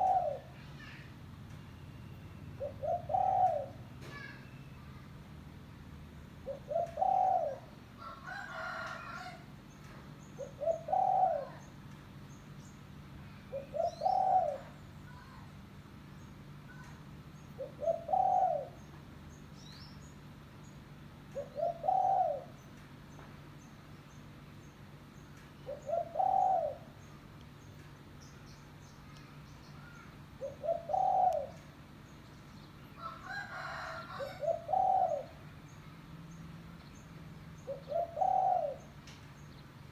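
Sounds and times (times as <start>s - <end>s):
dove cooing: 0.0s - 0.6s, 2.6s - 4.3s, 6.4s - 9.4s, 10.4s - 11.7s, 13.5s - 14.8s, 17.6s - 18.9s, 21.3s - 22.6s, 25.6s - 27.0s, 29.8s - 31.7s, 33.0s - 35.5s, 37.6s - 39.0s
faint small bird chirps: 4.1s - 5.0s.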